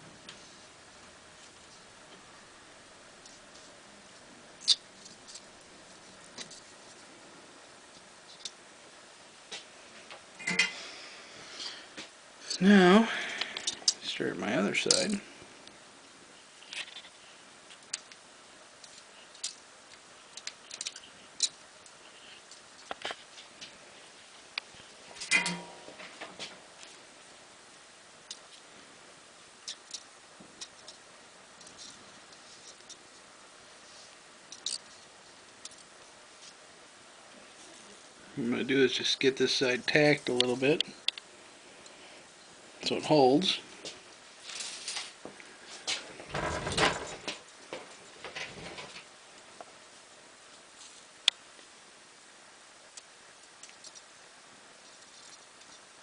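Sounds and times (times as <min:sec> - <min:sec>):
light clicks and taps of metal wire: 0:14.8 - 0:15.8.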